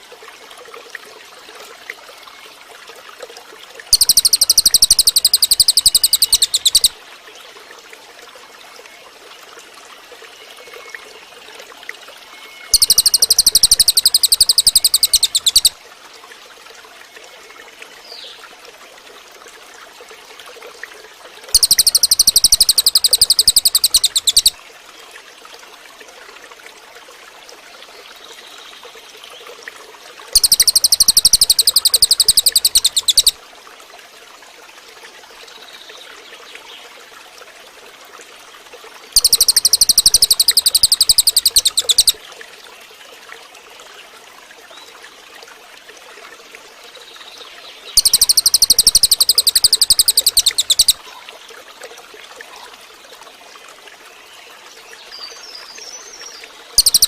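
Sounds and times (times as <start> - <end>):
bird buzzing trill: 3.9 - 6.9, 12.8 - 15.7, 21.6 - 24.5, 30.4 - 33.4, 39.2 - 42.1, 48.0 - 51.0, 56.8 - 57.0.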